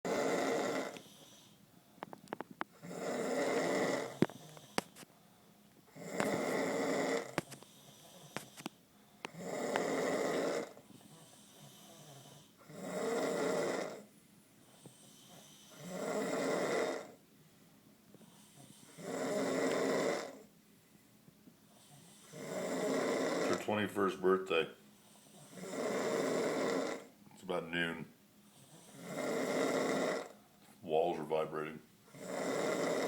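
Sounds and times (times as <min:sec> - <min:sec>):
woman snoring loudly: 0:00.1 - 0:01.5, 0:02.7 - 0:04.8, 0:05.9 - 0:08.6, 0:09.3 - 0:14.1, 0:15.1 - 0:17.2, 0:18.6 - 0:20.5, 0:22.0 - 0:23.7, 0:25.3 - 0:27.2, 0:28.7 - 0:30.4, 0:32.1 - 0:33.0
quiet breathing: 0:00.5 - 0:03.0, 0:03.6 - 0:12.8, 0:14.0 - 0:16.2, 0:17.1 - 0:26.0, 0:28.4 - 0:31.0.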